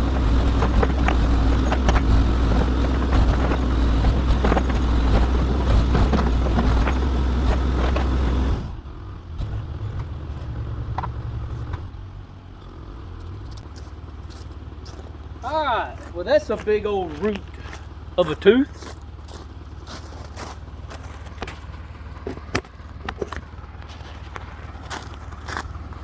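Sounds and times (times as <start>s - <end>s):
sharp knocks and clunks: 0.0s - 8.6s, 10.0s - 11.9s
diesel engine running: 0.0s - 26.0s.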